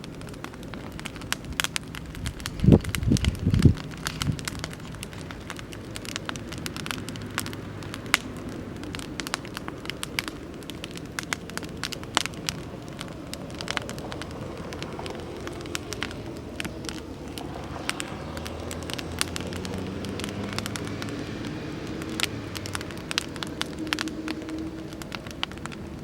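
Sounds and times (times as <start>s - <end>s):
campfire crackling: 0.0s - 26.0s
sharp pops: 0.0s - 26.0s
strong low thumps: 2.1s - 4.5s.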